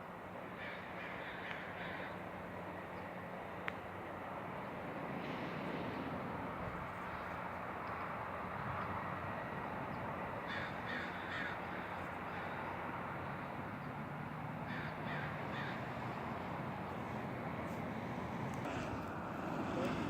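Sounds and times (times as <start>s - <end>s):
outdoor background noise: 0.0s - 20.0s
bird harsh calls: 14.7s - 16.0s
low hum: 15.8s - 20.0s.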